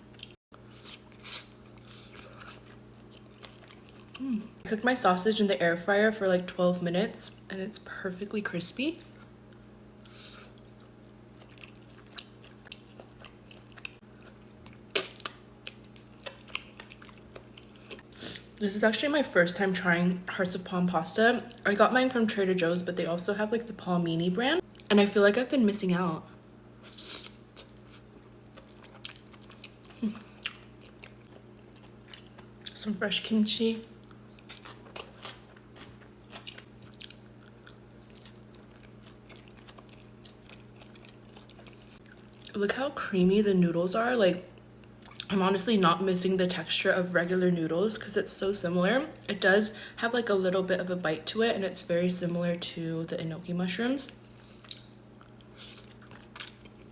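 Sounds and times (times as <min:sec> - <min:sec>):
person chewing food: 0:00.0 - 0:04.6, 0:09.0 - 0:18.5, 0:26.6 - 0:32.8, 0:34.0 - 0:42.5, 0:44.6 - 0:45.3, 0:54.4 - 0:56.9.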